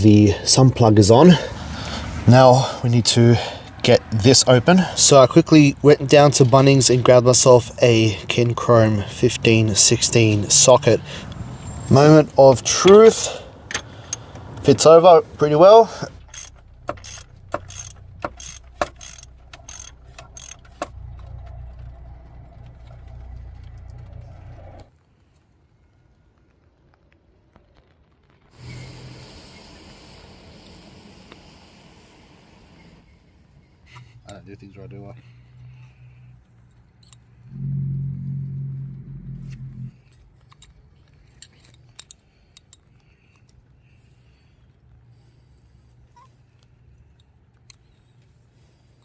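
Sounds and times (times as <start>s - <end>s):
low mechanical hum: 16.1s - 25.0s, 37.0s - 49.0s
socket ratchet clicking: 16.2s - 21.0s
low rumble: 20.9s - 24.9s, 37.4s - 40.2s.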